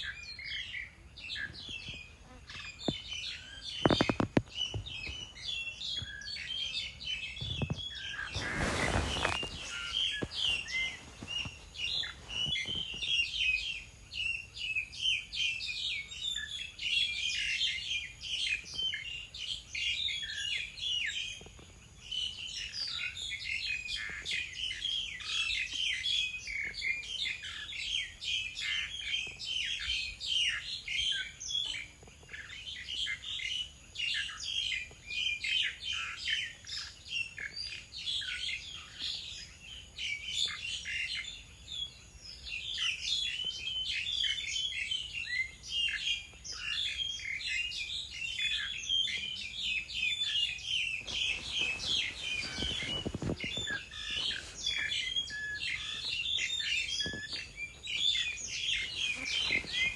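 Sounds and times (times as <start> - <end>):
songbirds chirping: 0.0 - 59.9.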